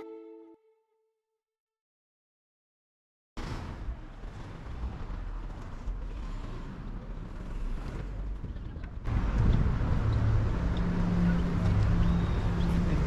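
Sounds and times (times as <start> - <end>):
low rumble of road traffic: 3.6 - 13.0.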